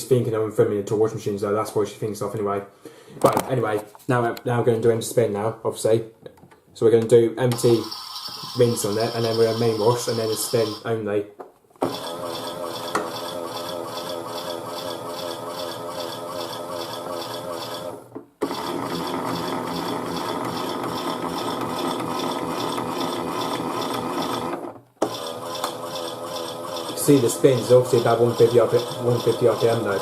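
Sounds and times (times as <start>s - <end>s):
toy motor whirring and rattling: 7.6s - 10.9s, 25.1s - 30.0s.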